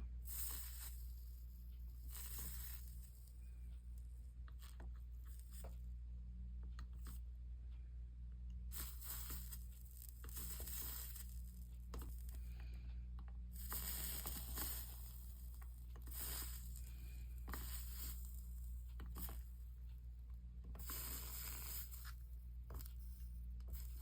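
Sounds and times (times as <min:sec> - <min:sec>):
steady low hum: 0:00.0 - 0:24.0
flux sizzling and crackling: 0:00.3 - 0:01.2, 0:01.9 - 0:03.4, 0:08.7 - 0:12.6, 0:13.6 - 0:19.4, 0:20.8 - 0:22.2.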